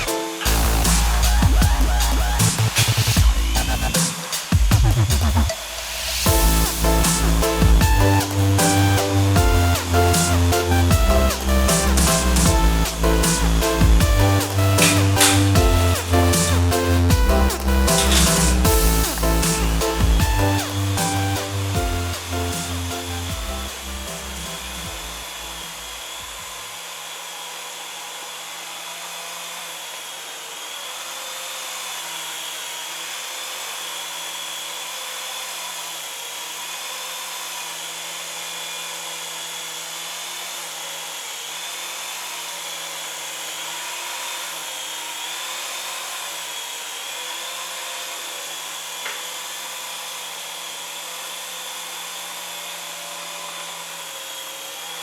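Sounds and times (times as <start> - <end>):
toy helicopter rotor whine: 22.2 - 55.0.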